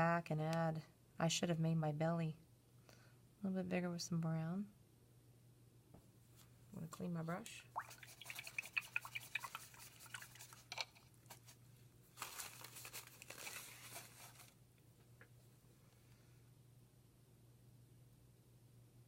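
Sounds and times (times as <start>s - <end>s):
paintbrush scrubbing rustle: 7.7s - 11.6s, 12.2s - 14.5s.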